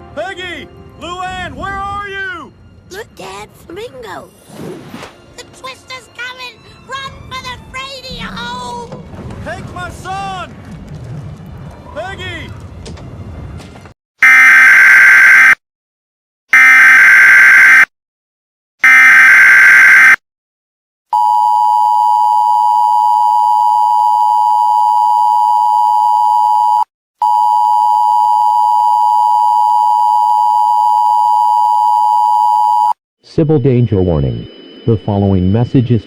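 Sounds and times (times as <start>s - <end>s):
steady dual tone alert: 14.2s - 15.6s, 16.6s - 17.9s, 18.8s - 20.2s, 32.6s - 36.0s.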